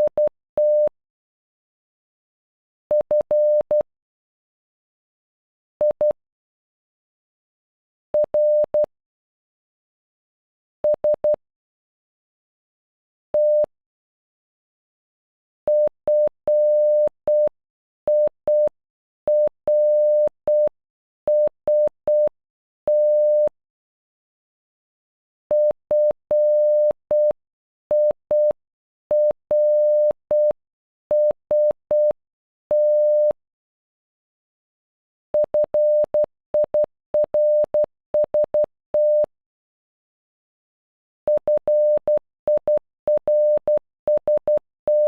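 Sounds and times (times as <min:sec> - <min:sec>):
morse code beeps: 0:00.0 - 0:00.9, 0:22.9 - 0:23.5, 0:25.6 - 0:33.4, 0:35.4 - 0:39.3, 0:41.3 - 0:45.0.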